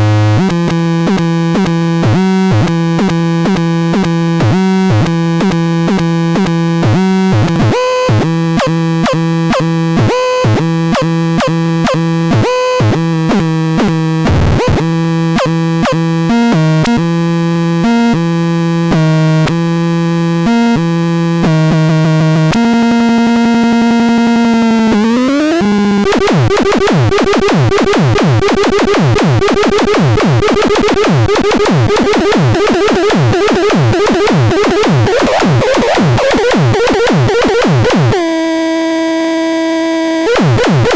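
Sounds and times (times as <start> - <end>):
synthesizer rhythmic notes: 24.0 - 38.6, 40.2 - 40.9
synthesizer pitch sweeps: 24.2 - 38.5.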